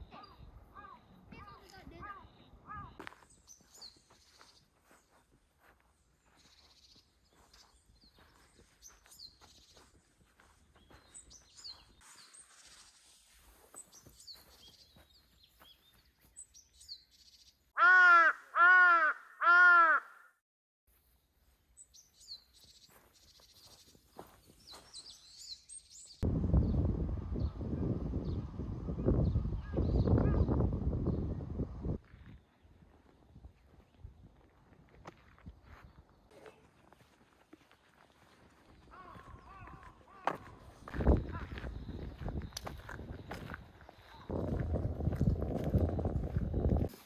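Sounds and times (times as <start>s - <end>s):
small birds chirping: 0.0s - 17.8s, 21.4s - 26.8s, 27.4s - 46.9s
crow cawing: 17.8s - 20.4s, 38.9s - 40.6s.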